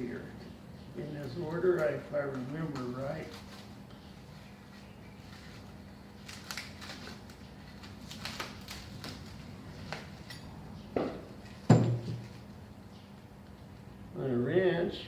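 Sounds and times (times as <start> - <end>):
packaging rustling: 5.2 - 10.2
sharp knocks: 11.0 - 12.3.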